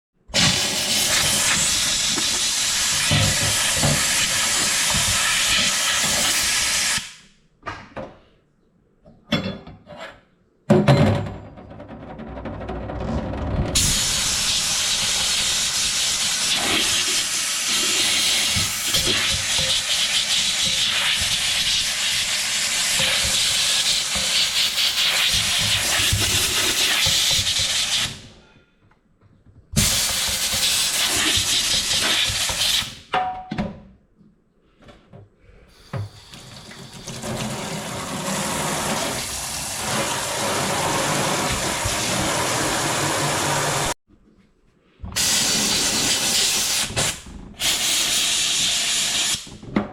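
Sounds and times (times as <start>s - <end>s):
steam cleaner hissing: 0.4s - 7.2s, 13.8s - 28.3s, 29.8s - 33.0s, 35.8s - 44.0s, 45.2s - 49.5s.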